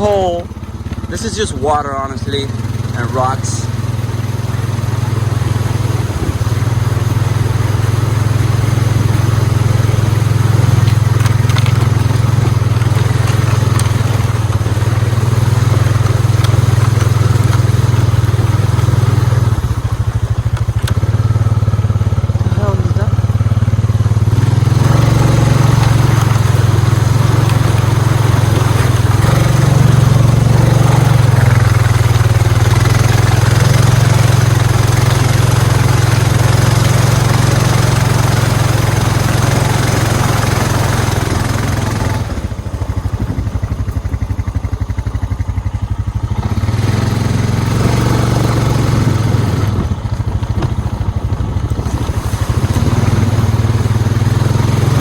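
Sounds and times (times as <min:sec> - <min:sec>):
atv engine running: 0:00.0 - 0:55.0.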